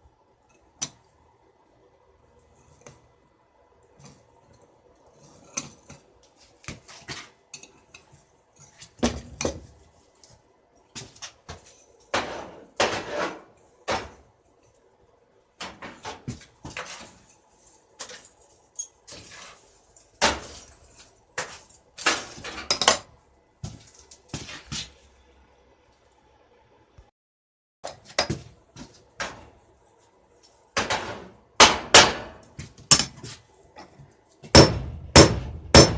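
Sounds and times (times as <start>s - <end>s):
metallic clinks and knocks: 18.0s - 19.1s.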